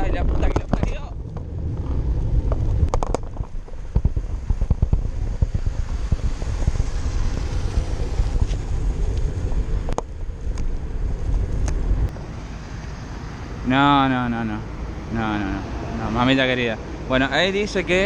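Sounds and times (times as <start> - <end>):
bike knocking and rattling: 0.0 - 11.9
wind rushing over microphone: 0.0 - 12.3.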